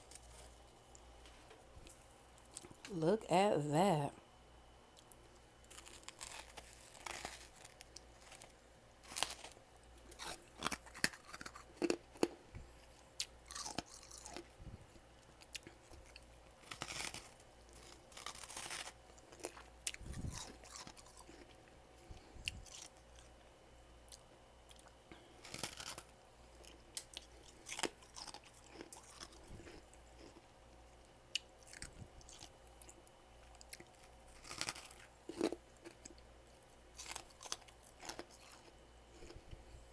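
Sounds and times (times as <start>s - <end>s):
crunching and chewing frost: 0.0s - 2.8s, 4.9s - 39.8s.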